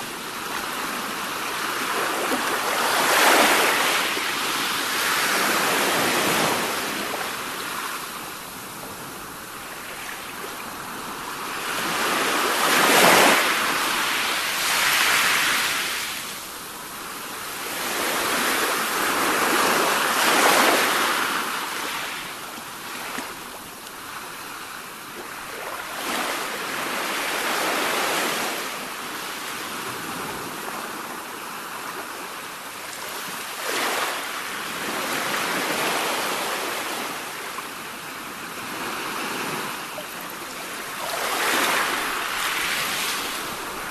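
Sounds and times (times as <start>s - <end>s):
sea waves breaking on shore: 0.0s - 43.9s.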